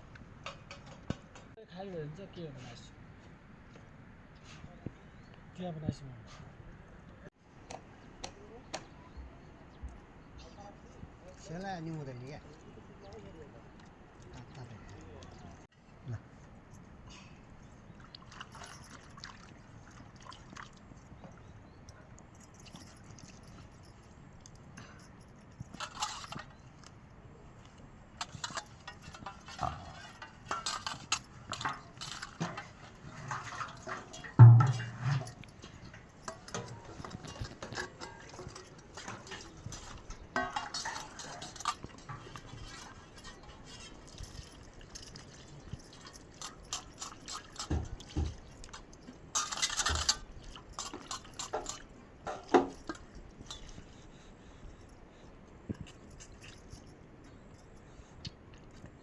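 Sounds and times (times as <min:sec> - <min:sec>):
dishes and utensils clinking: 0:21.2 - 0:26.7, 0:28.2 - 0:53.9.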